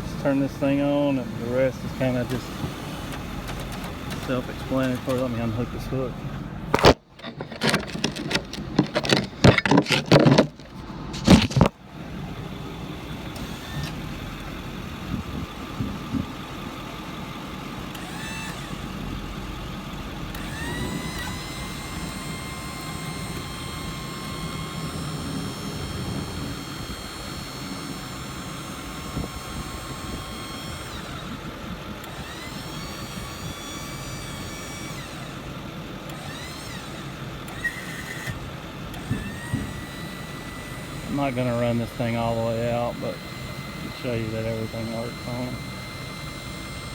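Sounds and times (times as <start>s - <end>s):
diesel engine idling: 0.0s - 9.7s, 10.5s - 46.9s
crane drive whining: 0.0s - 46.9s
metal clanking: 6.7s - 11.8s.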